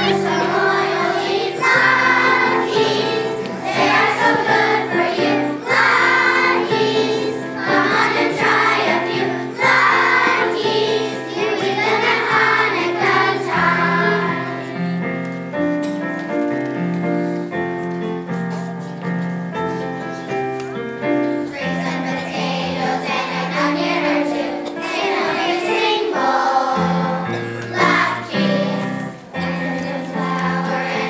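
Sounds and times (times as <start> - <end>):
children's choir singing: 0.0 - 15.0, 21.3 - 31.0
instrumental accompaniment: 0.0 - 31.0.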